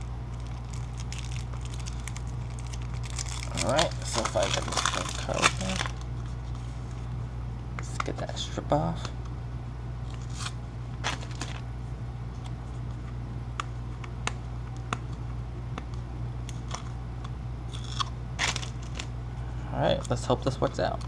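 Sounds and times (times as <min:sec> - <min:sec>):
plastic wrapper crinkling: 0:00.0 - 0:06.3, 0:10.2 - 0:11.6, 0:17.8 - 0:19.1
steady low hum: 0:00.0 - 0:21.0.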